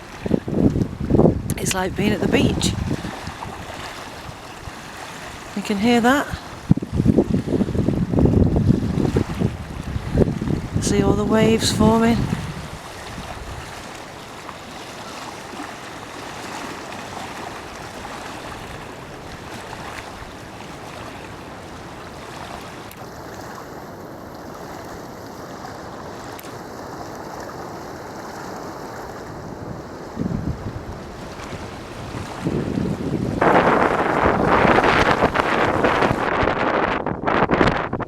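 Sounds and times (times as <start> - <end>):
wind on microphone: 0.0 - 14.0, 27.0 - 38.0
waves lapping and splashing: 0.0 - 37.0.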